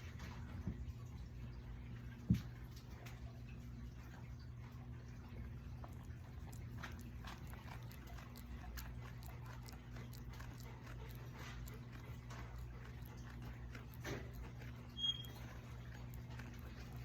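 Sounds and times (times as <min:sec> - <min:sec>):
low electrical hum: 0:00.0 - 0:17.0
small clicks and rustles: 0:05.8 - 0:17.0.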